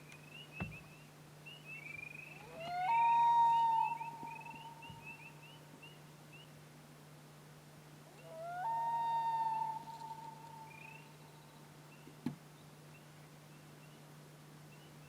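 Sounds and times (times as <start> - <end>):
faint bird chirps: 0.0 - 6.6
wailing animal call: 2.3 - 5.2, 8.2 - 11.0.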